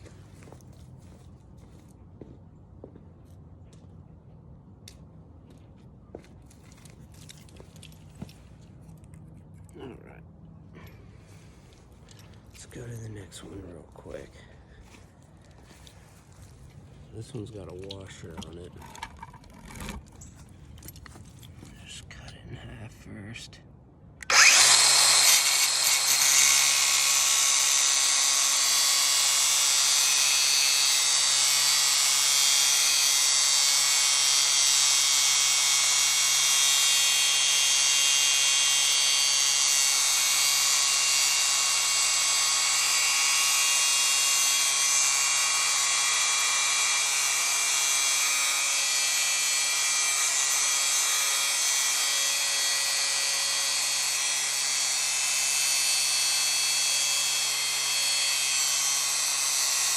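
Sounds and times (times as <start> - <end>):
angle grinder cutting metal: 17.2 - 20.3, 24.2 - 59.9.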